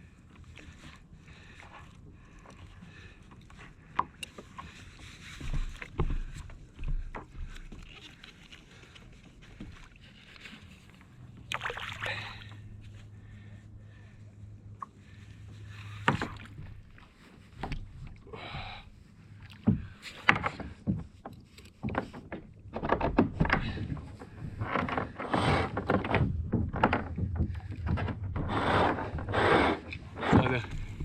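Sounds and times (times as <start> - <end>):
water sloshing against hull: 0.0 - 31.0
knocks and thumps of gear: 19.6 - 28.6.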